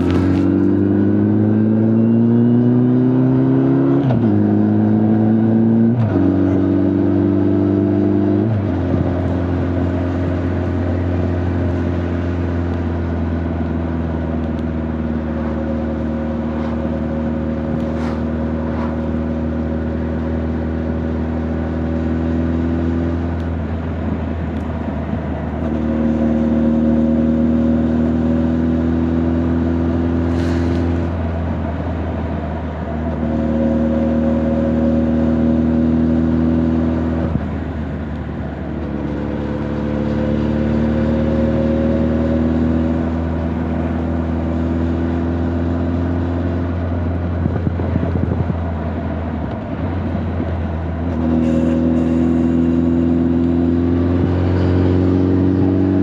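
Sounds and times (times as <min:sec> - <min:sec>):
motorcycle engine droning: 0:07.8 - 0:56.0.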